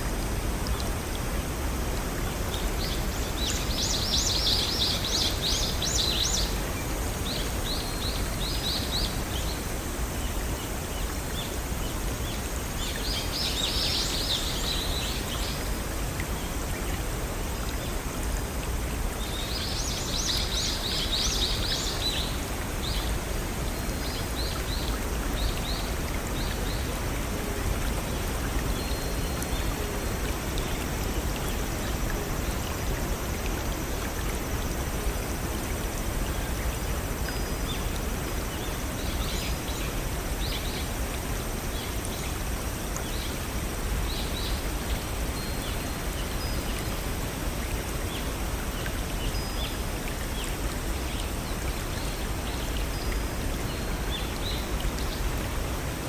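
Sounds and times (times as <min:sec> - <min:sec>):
water rushing in stream: 0:00.0 - 0:56.0.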